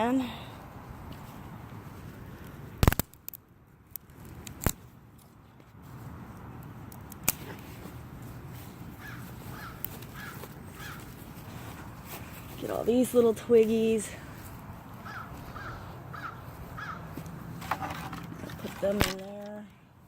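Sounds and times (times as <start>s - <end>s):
wooden sticks cracking: 2.4s - 5.3s, 16.8s - 19.7s
bird calling: 9.0s - 11.2s, 15.0s - 17.2s.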